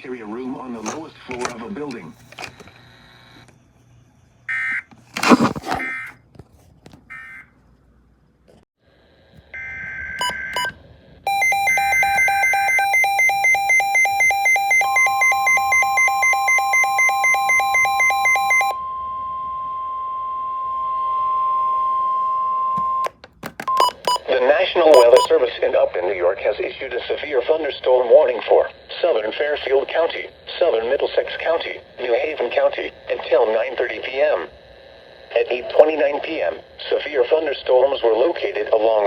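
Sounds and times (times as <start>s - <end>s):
steady warning alarm tone: 9.5s - 23.1s, 23.7s - 26.4s
rapid electronic alert beeping: 11.3s - 18.7s, 23.7s - 24.3s, 24.9s - 25.4s.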